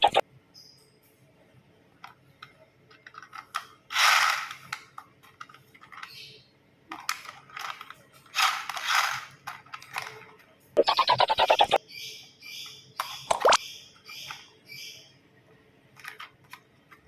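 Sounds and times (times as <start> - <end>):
toy trains clattering: 2.0 - 10.6, 16.0 - 17.0
toy trains clicking and knocking: 2.0 - 11.8, 13.0 - 14.6, 16.0 - 17.0.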